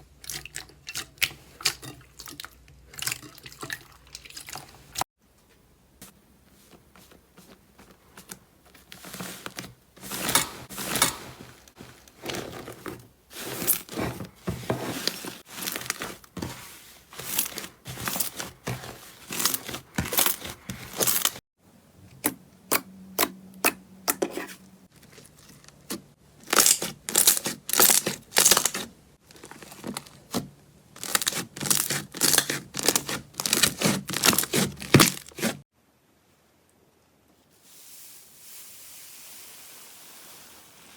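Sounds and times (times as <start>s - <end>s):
slime crackling and tearing: 26.4s - 30.3s, 31.0s - 35.6s.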